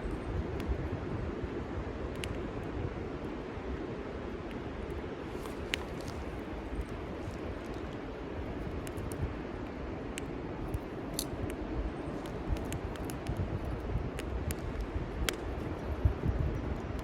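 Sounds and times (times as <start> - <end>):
wind on microphone: 0.0 - 17.0
fire crackling and popping: 5.2 - 17.0.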